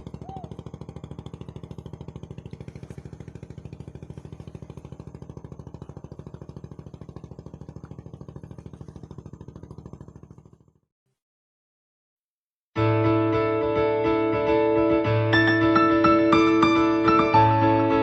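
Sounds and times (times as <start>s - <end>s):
small engine running: 0.0s - 10.9s, 15.4s - 18.0s.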